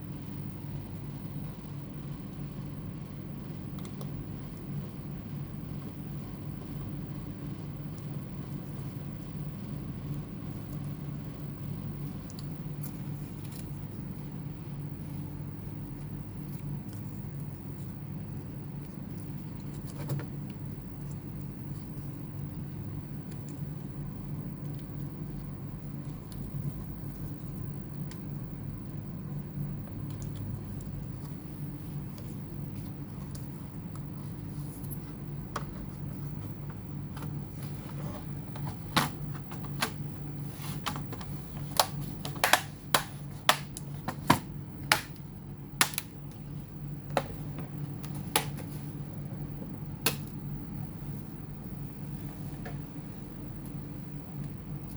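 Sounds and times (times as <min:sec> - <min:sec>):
steady low hum: 0:00.0 - 0:54.9
laptop clicks and taps: 0:40.8 - 0:45.2.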